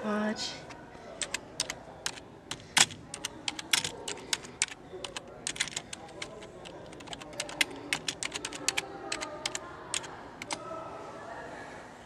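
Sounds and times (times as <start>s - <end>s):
typing on computer keyboard: 1.2s - 10.6s.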